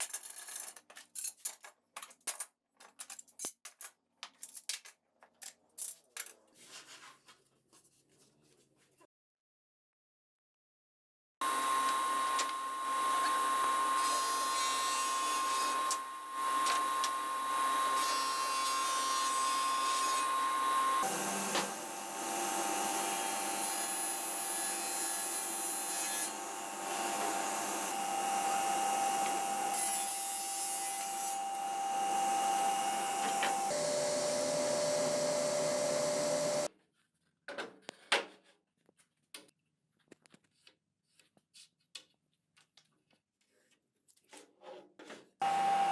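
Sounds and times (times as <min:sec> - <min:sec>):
power tool motor whine: 0:11.4 - 0:36.7, 0:45.4 - 0:45.9.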